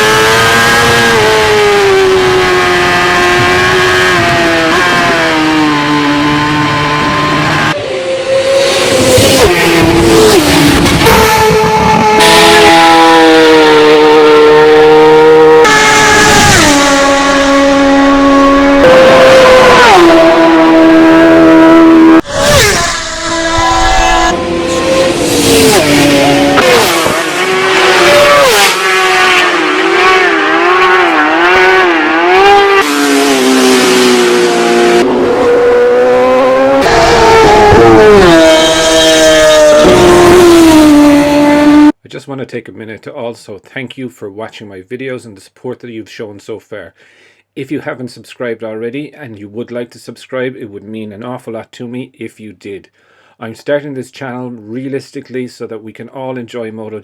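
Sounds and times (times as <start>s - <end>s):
racing motorcycle engines revving: 0.0s - 42.0s.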